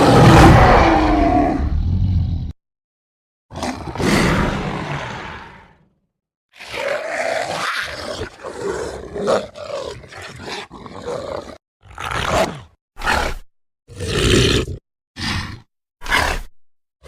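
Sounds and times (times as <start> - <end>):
werewolf growling: 6.6 - 12.7.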